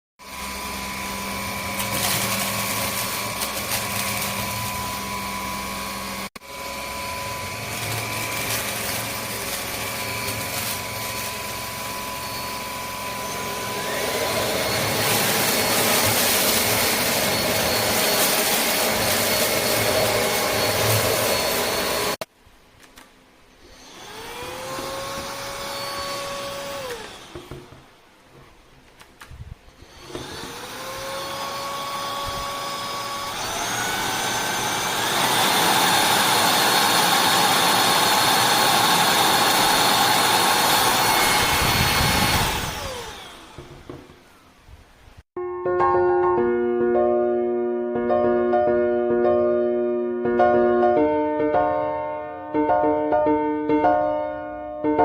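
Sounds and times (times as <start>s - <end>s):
stick vacuum cleaner running: 0.2s - 22.3s, 23.6s - 27.9s, 29.7s - 44.3s.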